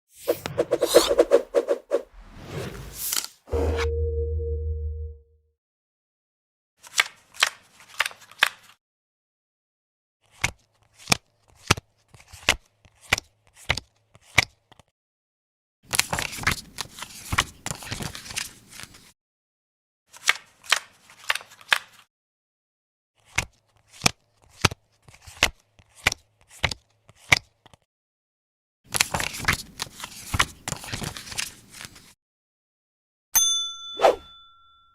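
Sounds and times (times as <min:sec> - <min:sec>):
playing cards shuffling: 0:00.2 - 0:03.4
bell-like ding: 0:03.6 - 0:05.3, 0:33.4 - 0:34.9.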